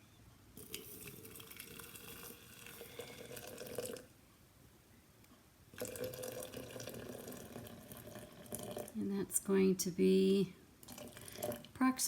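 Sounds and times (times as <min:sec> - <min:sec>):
hot water pouring onto tea leaves: 0:00.6 - 0:04.1, 0:05.8 - 0:08.9, 0:10.8 - 0:11.7.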